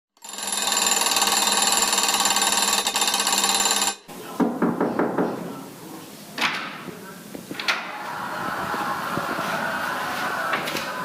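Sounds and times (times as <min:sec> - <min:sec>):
alarm clock bell ringing: 0:00.2 - 0:04.1.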